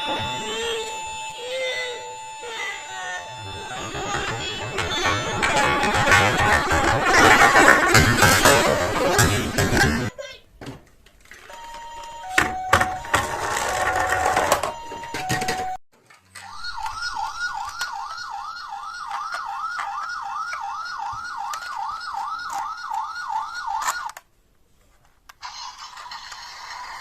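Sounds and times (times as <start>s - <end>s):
toy siren yelping: 0.0s - 8.8s, 11.5s - 15.7s, 16.4s - 24.2s.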